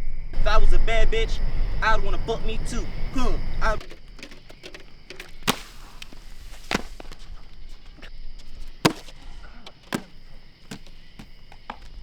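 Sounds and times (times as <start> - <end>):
sharp knocks: 8.9 - 9.2.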